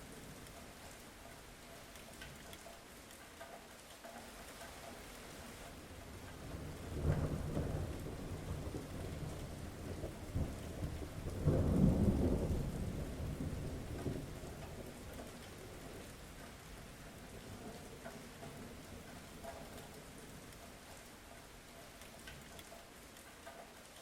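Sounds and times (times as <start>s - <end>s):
steady rain: 0.0s - 24.0s
thunder rumbling: 6.4s - 16.1s.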